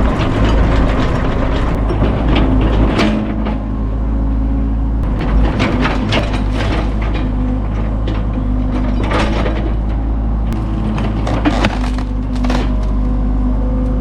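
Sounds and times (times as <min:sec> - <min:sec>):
heavy machine engine running: 0:00.0 - 0:14.0
wood cracking and snapping: 0:10.6 - 0:13.2.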